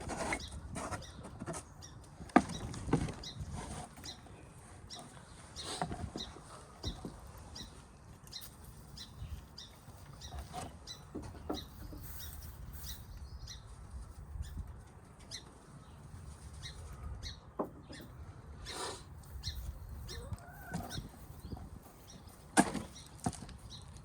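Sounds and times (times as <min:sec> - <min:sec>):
hens chirping: 0:14.4 - 0:24.0
hens lower calls: 0:20.0 - 0:21.1.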